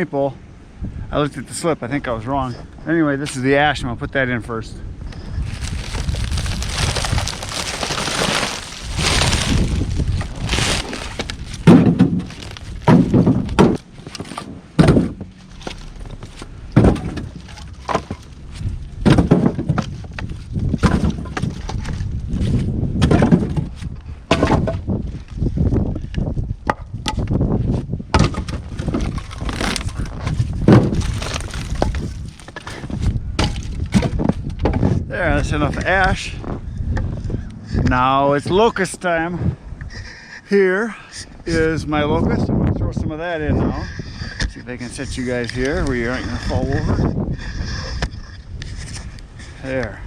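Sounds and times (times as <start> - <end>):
firewood knocking and clattering: 5.5 - 22.1, 23.0 - 25.0, 28.1 - 35.0.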